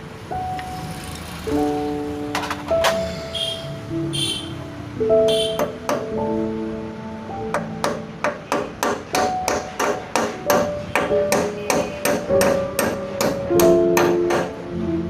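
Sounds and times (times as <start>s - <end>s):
background music with sustained tones: 0.0s - 15.0s
hammer blows: 7.5s - 14.6s.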